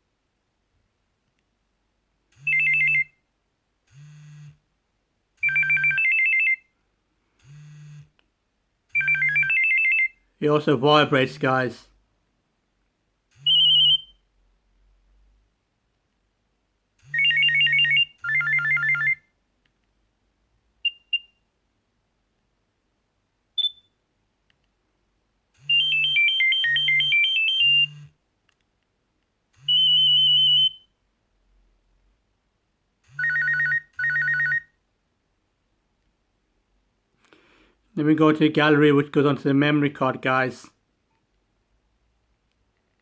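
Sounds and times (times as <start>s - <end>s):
phone vibrating buzz: 3.9s - 4.6s, 7.4s - 8.2s
electronic ringtone melodies: 5.4s - 6.6s, 9.0s - 10.1s, 17.1s - 19.2s, 25.7s - 28.1s, 33.1s - 34.7s
short single beeps: 23.6s - 24.0s.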